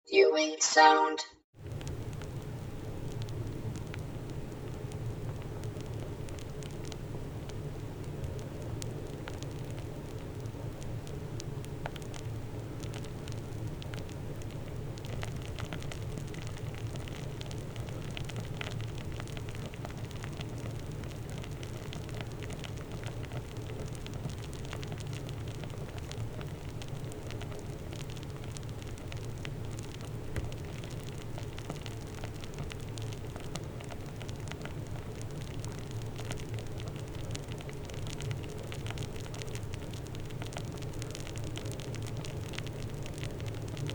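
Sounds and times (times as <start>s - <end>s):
foam bubbles fizzing and popping: 1.6s - 43.9s.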